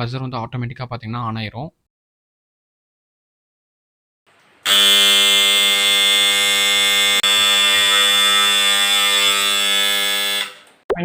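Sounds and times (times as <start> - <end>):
electric buzzer buzzing: 4.6 - 10.7.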